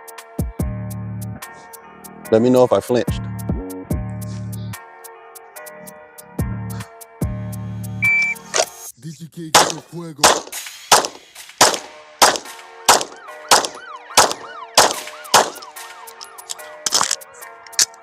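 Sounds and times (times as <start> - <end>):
shot timer beep: 8.0 - 8.5
pistol shots: 9.6 - 16.0.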